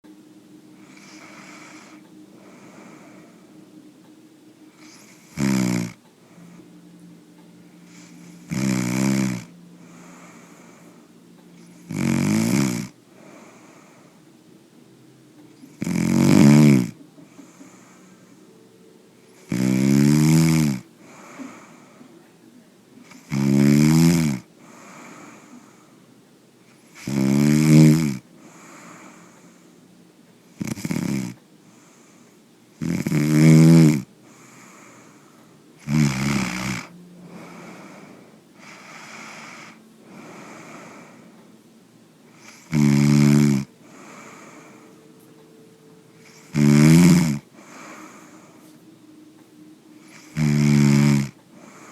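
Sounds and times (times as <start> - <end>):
soft breaths: 0.1 - 51.9
man snoring: 0.8 - 3.4, 4.7 - 6.0, 7.9 - 14.2, 15.6 - 18.4, 19.4 - 22.0, 23.0 - 26.0, 26.8 - 29.6, 30.5 - 41.4, 42.3 - 45.0, 46.1 - 48.7, 50.0 - 51.9.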